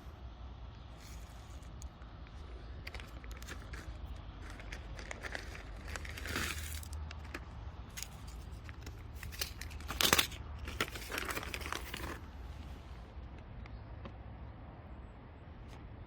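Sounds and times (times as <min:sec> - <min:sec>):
low steady hum: 0:00.0 - 0:16.0
rustling handling noise: 0:00.9 - 0:13.0.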